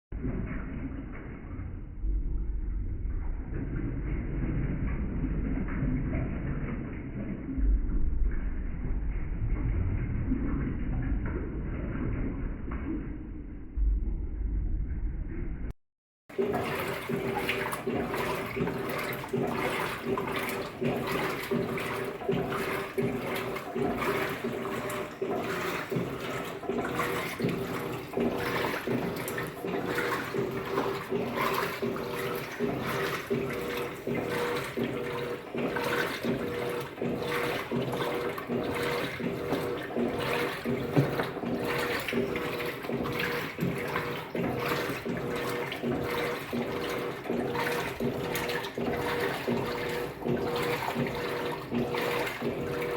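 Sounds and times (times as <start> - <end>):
washing machine motor hum: 0.1 - 52.9
water and clothes sloshing: 3.4 - 7.5, 16.3 - 52.9.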